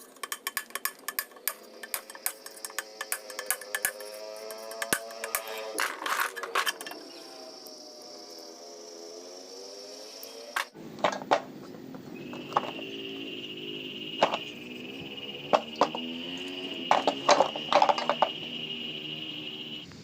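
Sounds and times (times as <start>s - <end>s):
metal parts clinking and knocking: 0.0s - 7.1s, 15.5s - 16.1s, 16.8s - 18.4s
steady high whine: 0.0s - 20.0s.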